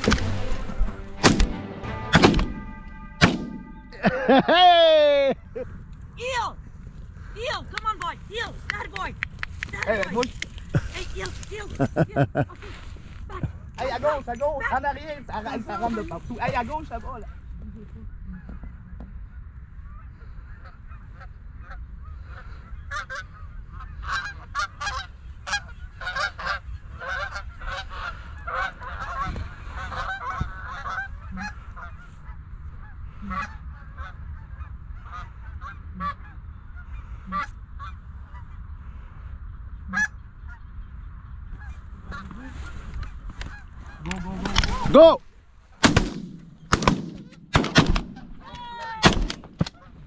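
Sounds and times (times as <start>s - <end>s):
geese honking: 0.0s - 4.6s, 18.3s - 39.1s, 39.8s - 40.8s, 41.5s - 44.8s, 49.6s - 50.0s.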